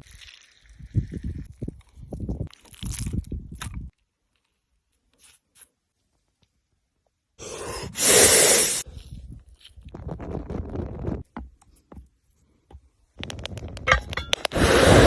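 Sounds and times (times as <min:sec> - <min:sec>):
loud hiss: 0:07.4 - 0:08.8, 0:14.5 - 0:15.0.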